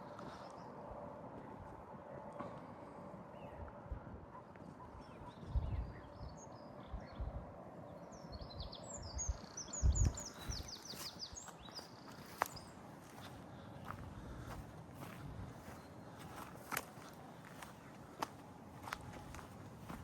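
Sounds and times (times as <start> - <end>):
songbird singing: 4.8 - 20.0.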